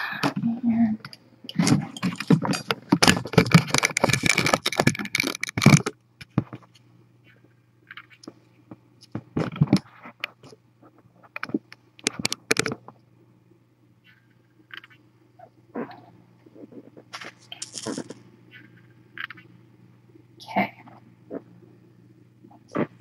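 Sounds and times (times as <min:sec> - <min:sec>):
clicks and knocks: 0:01.5 - 0:06.7.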